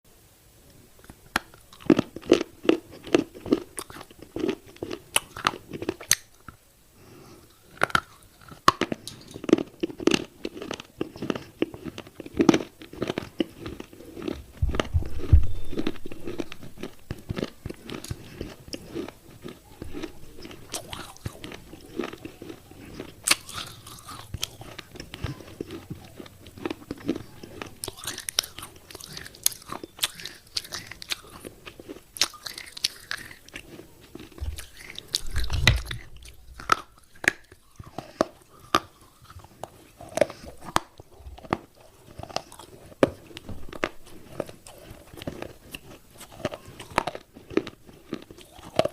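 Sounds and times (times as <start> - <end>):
person crunching clay: 8.8 - 39.0
low thump: 14.6 - 15.6.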